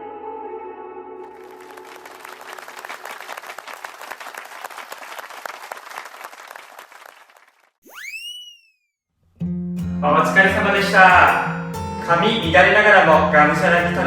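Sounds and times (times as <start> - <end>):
crowd applauding: 1.3 - 7.8.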